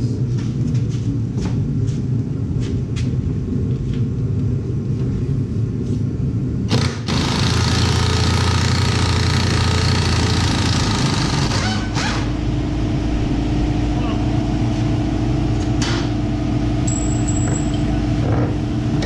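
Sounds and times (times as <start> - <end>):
vehicle engine humming: 11.9 - 17.0.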